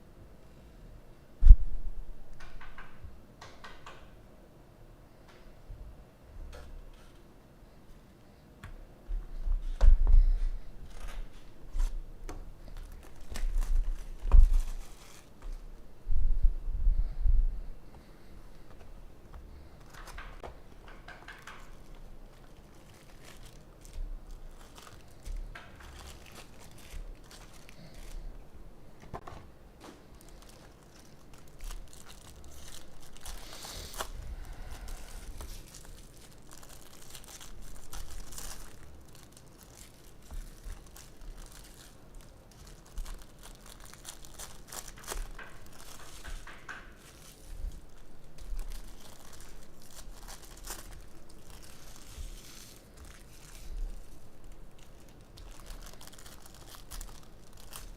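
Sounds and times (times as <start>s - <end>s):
plastic wrapping crinkling and tearing: 12.6s - 15.7s, 19.8s - 28.4s, 29.8s - 57.9s.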